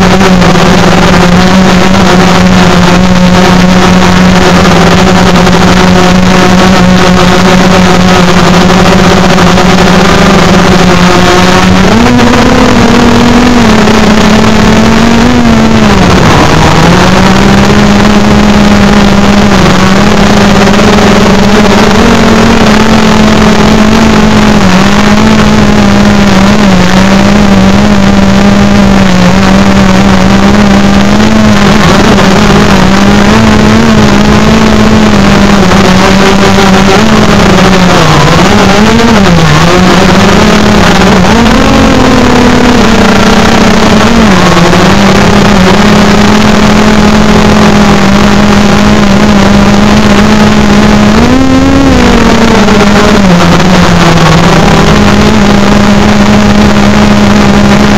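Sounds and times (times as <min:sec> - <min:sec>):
drone propellers buzzing: 0:00.0 - 0:57.9.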